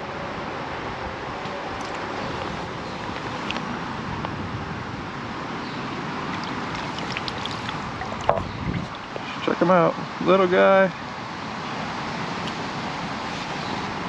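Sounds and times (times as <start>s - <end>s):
flowing creek water: 1.2s - 14.0s.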